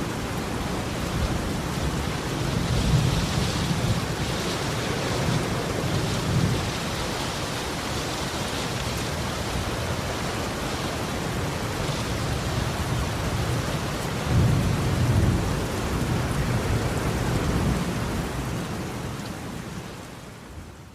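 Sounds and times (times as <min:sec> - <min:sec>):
heavy rain hissing: 0:00.0 - 0:19.9
rolling thunder: 0:14.2 - 0:18.1.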